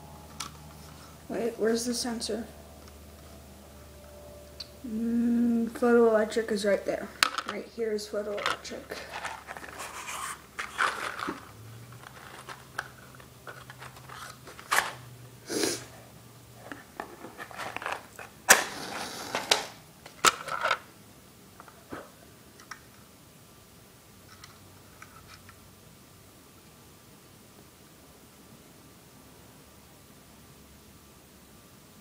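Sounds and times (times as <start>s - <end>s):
faint low hum: 0.0s - 32.0s
smoke detector being handled: 8.3s - 15.0s, 16.6s - 20.7s.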